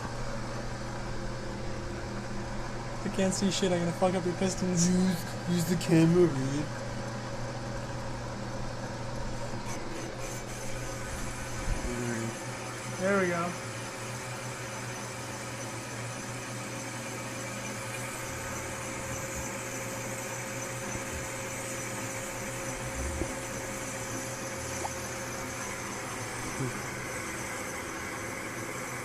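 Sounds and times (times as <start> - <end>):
metal lathe running: 9.7 - 29.0.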